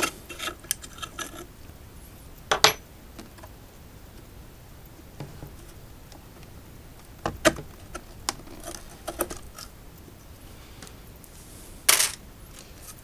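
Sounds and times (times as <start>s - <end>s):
small metal parts clinking: 11.9s - 12.2s.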